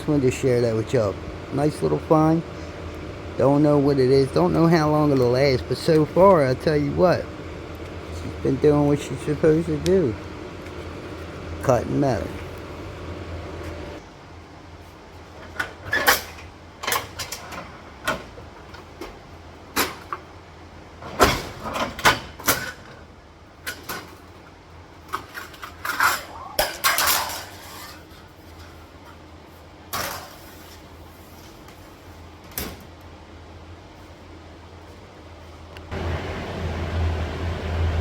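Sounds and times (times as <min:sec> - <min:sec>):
steady low hum: 0:00.0 - 0:38.0
metal tools clattering: 0:25.1 - 0:28.8.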